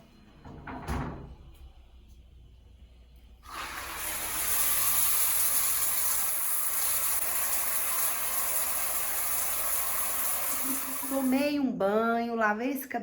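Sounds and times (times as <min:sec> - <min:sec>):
water running from tap: 0:03.4 - 0:11.4.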